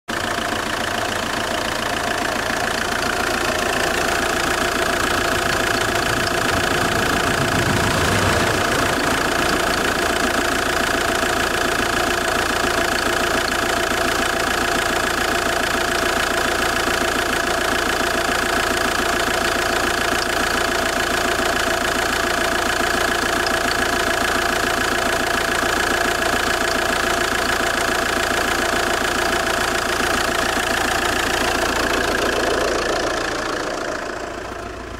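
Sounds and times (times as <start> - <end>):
diesel engine clattering idle: 0.1 - 34.9
engine creaking noise: 1.7 - 13.3.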